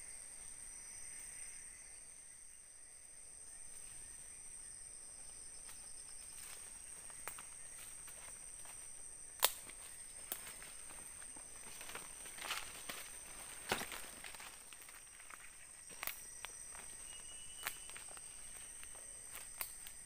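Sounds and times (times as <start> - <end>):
insects droning: 0.0 - 20.0
sharp snaps: 9.4 - 10.4, 19.5 - 20.0.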